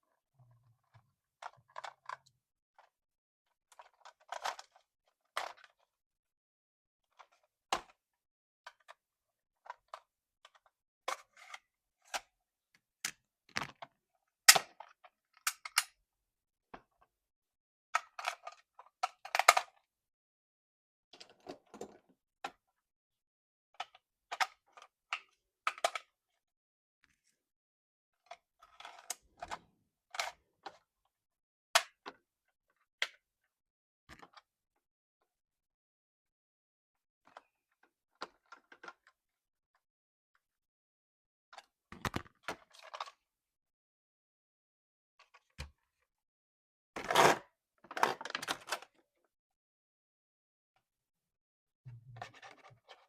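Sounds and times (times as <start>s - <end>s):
plastic clicks and crackles: 41.6s - 43.2s.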